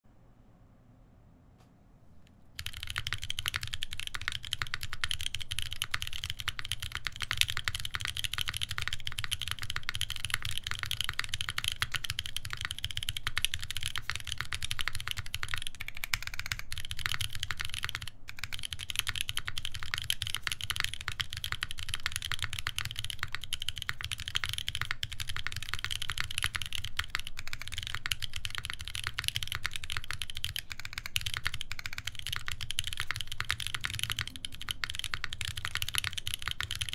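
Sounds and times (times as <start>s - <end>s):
fast typing on mechanical keyboard: 2.6s - 36.9s.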